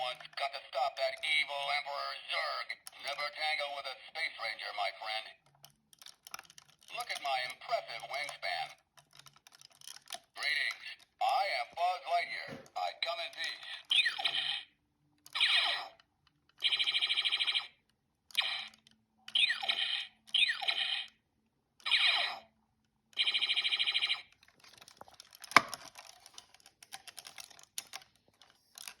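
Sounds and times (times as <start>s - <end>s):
plastic clicks: 5.4s - 7.3s, 9.0s - 10.3s, 24.3s - 29.0s
toy electronic bleeps and zaps: 13.9s - 14.6s, 15.4s - 15.9s, 18.4s - 18.7s, 19.4s - 21.2s, 21.9s - 22.4s
sharp plastic snap: 25.4s - 25.9s.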